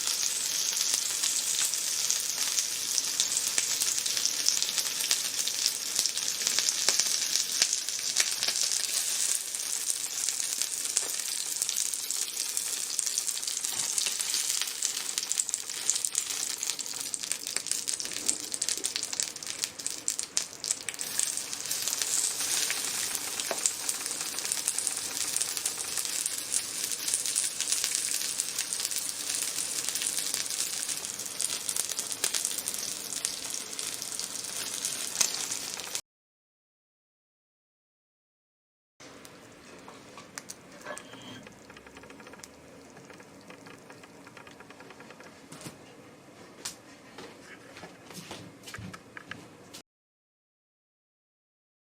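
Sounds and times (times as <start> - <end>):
food sizzling on a grill: 0.0 - 36.0.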